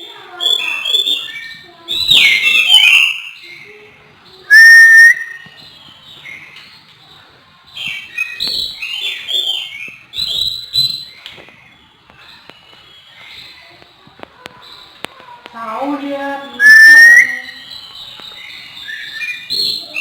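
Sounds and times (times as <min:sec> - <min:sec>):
loud clear bird whistle: 0:00.4 - 0:03.6, 0:04.5 - 0:05.8, 0:07.8 - 0:11.2, 0:16.5 - 0:20.0
bird singing whistled phrases: 0:00.4 - 0:03.7, 0:04.5 - 0:05.7, 0:16.3 - 0:20.0.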